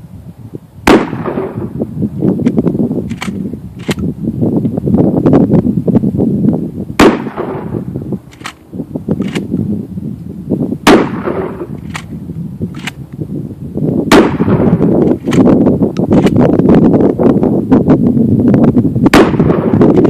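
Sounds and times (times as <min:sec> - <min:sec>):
shotgun shots with rumble: 0:00.8 - 0:01.8, 0:07.0 - 0:08.6, 0:10.8 - 0:12.1, 0:14.1 - 0:16.3, 0:19.1 - 0:20.0.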